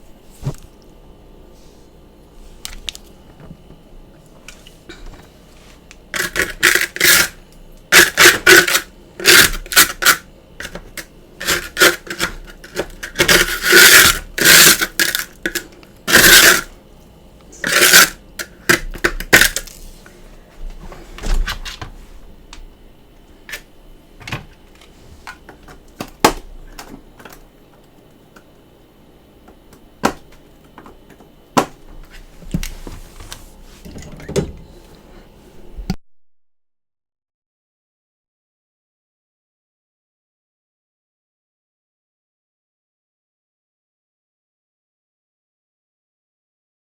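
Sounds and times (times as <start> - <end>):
freezer frost crunching: 6.2 - 16.8, 17.6 - 20.1.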